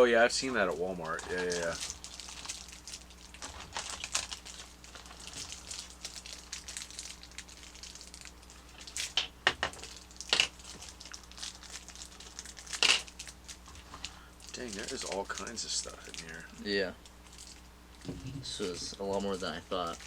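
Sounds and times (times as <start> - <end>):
plastic bags and paper crinkling: 0.4 - 20.0.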